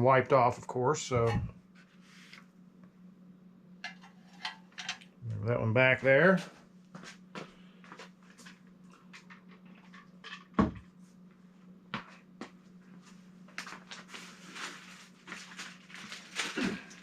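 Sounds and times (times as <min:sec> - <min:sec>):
steady low hum: 0:00.0 - 0:17.0
object thudding on table: 0:10.6 - 0:10.9.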